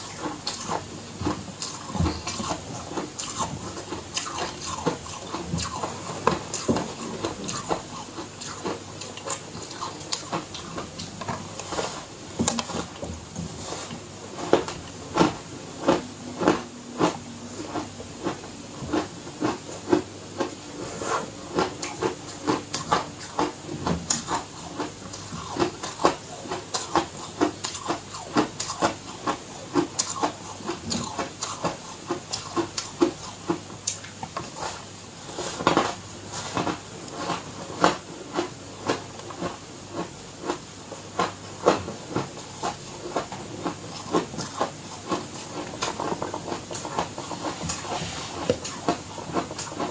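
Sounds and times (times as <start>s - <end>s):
chewing ice crunches: 24.1s - 34.0s.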